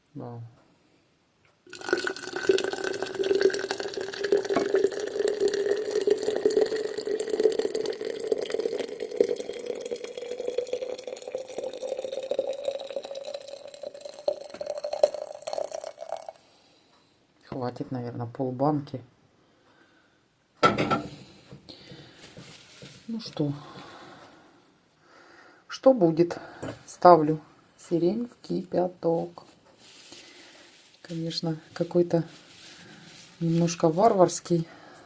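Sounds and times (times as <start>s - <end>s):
water pouring into a jar: 1.7s - 16.4s.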